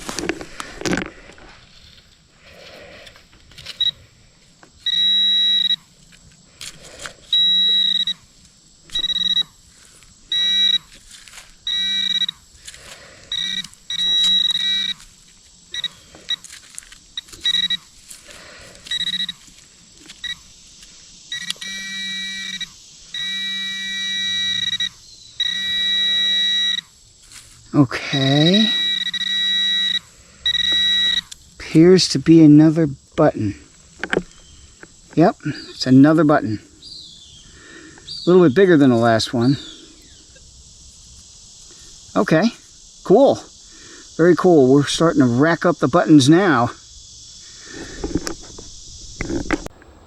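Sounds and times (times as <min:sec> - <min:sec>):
dirt scraping and clicking: 0:00.0 - 0:36.5, 0:47.7 - 0:49.9
metal detector pinpointer tone: 0:03.5 - 0:04.0, 0:04.8 - 0:05.9, 0:07.0 - 0:12.4, 0:13.2 - 0:15.1, 0:15.7 - 0:18.2, 0:18.8 - 0:20.5, 0:21.3 - 0:26.9, 0:27.8 - 0:31.4.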